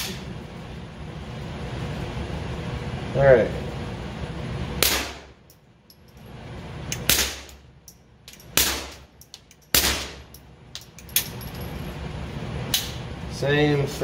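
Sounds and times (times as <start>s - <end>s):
suppressed pistol shots: 4.8s - 5.3s, 7.0s - 7.6s, 8.5s - 9.0s, 9.7s - 10.2s.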